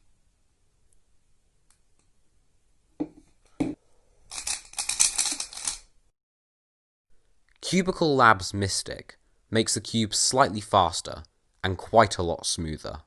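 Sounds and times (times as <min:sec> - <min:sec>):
speed cube clicking and scraping: 0:04.3 - 0:05.9.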